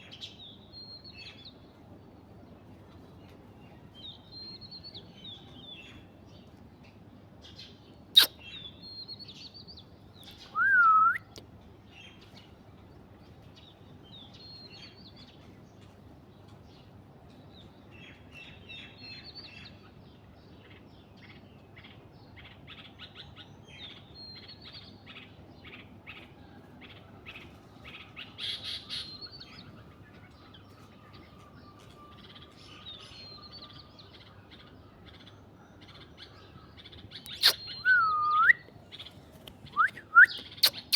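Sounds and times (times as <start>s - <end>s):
birds chirping: 0.0s - 11.2s, 11.8s - 40.9s
loud whistled bird call: 8.2s - 9.1s, 10.5s - 11.3s, 37.3s - 38.7s.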